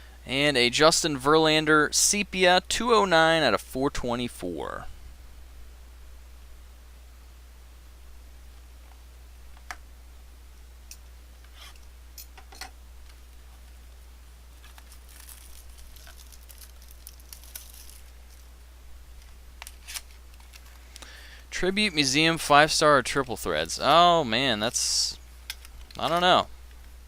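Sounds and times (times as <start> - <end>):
faint low hum: 0.0 - 27.0
wrapper crinkling and tearing: 14.5 - 18.5, 19.6 - 20.9.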